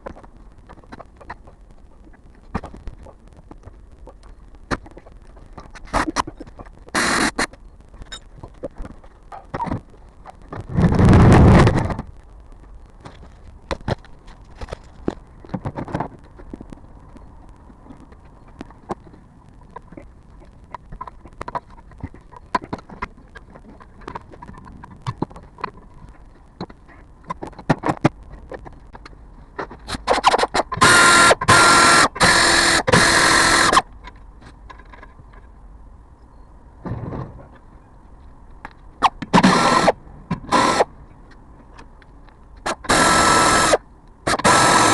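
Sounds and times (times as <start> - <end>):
faint steady hum: 0.0 - 44.9
loud rough noise: 10.6 - 12.1.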